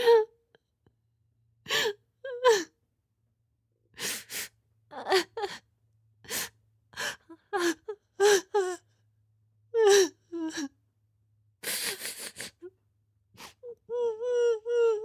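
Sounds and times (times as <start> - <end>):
person crying with gasping sobs: 7.0 - 8.8.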